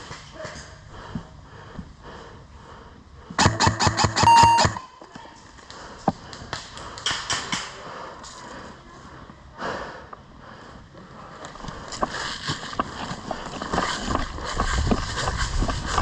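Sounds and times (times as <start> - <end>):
airsoft gun full-auto burst: 3.4 - 4.8.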